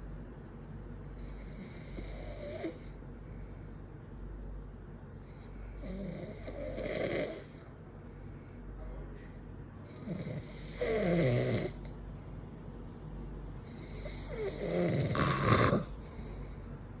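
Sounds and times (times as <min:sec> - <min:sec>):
man snoring: 0:01.2 - 0:03.0, 0:05.3 - 0:07.6, 0:09.9 - 0:11.9, 0:13.6 - 0:16.4.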